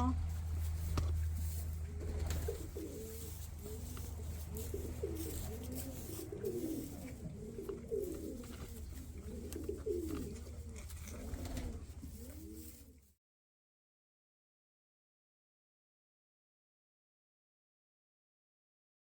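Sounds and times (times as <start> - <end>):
pigeons cooing: 0.0 - 13.0
low steady hum: 0.0 - 13.1.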